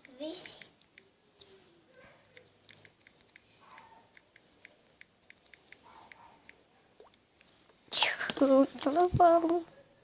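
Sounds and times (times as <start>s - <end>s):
fingers tapping on touchscreen: 2.3s - 7.2s.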